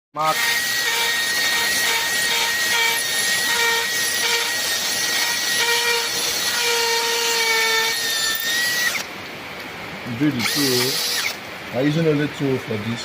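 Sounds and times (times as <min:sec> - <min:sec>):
electric power drill boring into wall: 0:00.2 - 0:09.1, 0:10.4 - 0:11.4.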